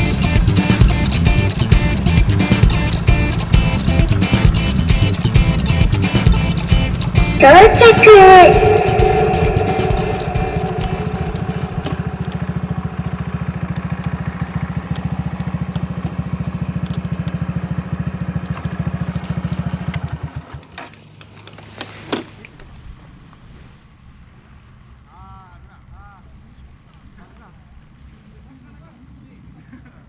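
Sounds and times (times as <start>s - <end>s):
short sharp sound: 7.4s - 13.4s.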